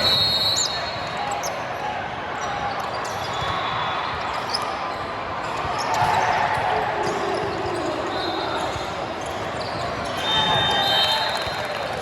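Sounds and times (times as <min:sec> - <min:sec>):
crowd voices in large hall: 0:00.0 - 0:12.0.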